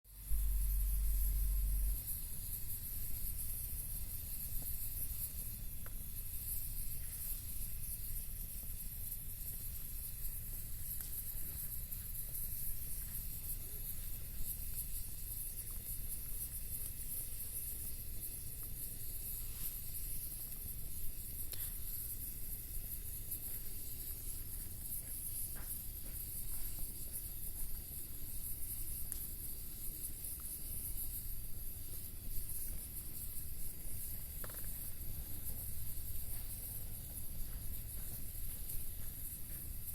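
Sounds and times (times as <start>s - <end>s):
bonfire hiss and rumble: 0.1s - 39.9s
burning wood crackling and popping: 0.8s - 39.8s.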